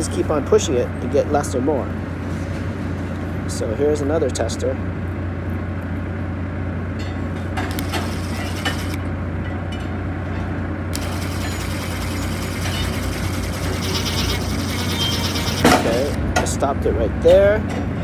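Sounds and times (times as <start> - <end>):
steady low hum: 0.0 - 17.7
wire stripper cutting insulation: 7.6 - 9.0, 10.9 - 16.4
electric drill spinning: 7.7 - 9.0, 10.9 - 16.2.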